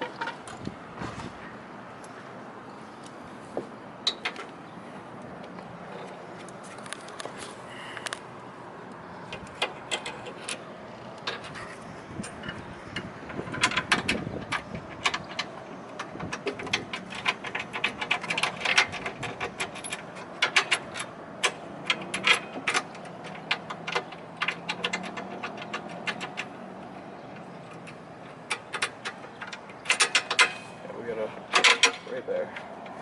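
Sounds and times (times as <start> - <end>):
metallic clicks of bolts and nuts: 9.3 - 10.6, 12.2 - 26.6, 27.3 - 30.8, 31.5 - 32.1.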